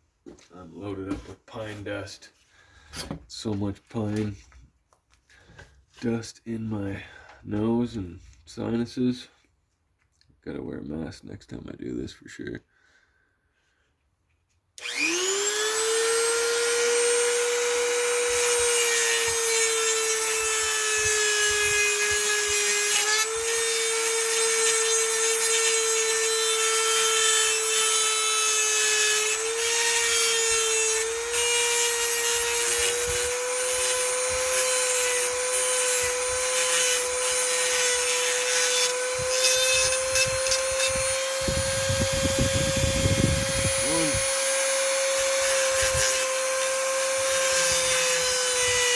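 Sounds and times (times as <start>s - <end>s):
rotary tool grinding metal: 14.8s - 48.9s.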